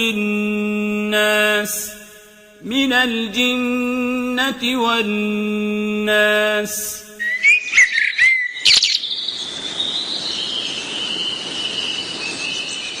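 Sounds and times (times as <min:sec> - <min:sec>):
steady background hiss: 0:00.0 - 0:07.8
small birds chirping: 0:07.2 - 0:13.0.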